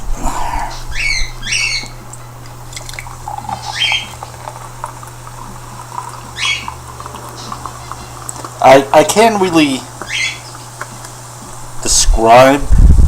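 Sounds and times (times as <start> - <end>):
steady low hum: 0.0 - 13.0
bird squawking: 0.6 - 2.0, 3.5 - 4.4, 6.3 - 8.2, 9.5 - 10.8.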